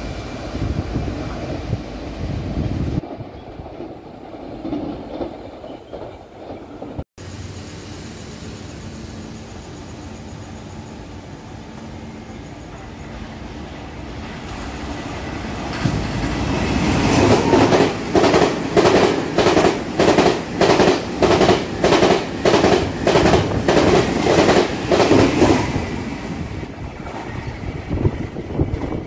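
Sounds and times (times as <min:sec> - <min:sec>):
train rumble: 0:00.0 - 0:29.0
train wheels clattering: 0:14.2 - 0:25.9.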